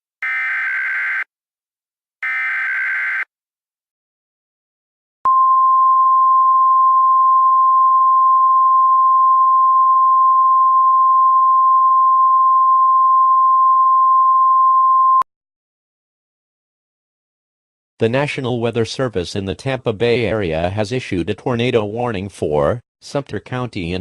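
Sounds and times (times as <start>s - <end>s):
steady electronic alarm tone: 0.2s - 1.3s, 2.2s - 3.3s.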